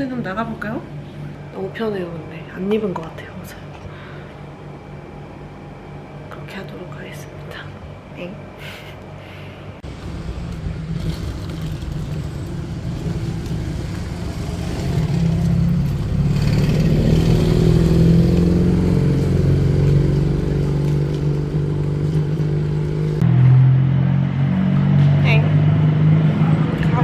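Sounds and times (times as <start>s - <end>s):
vehicle engine running: 9.8s - 23.6s
road noise: 9.8s - 27.0s.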